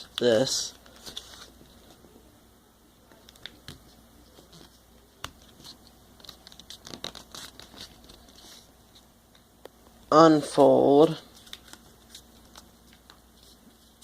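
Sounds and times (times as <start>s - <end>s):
paper being folded and creased: 4.4s - 8.7s.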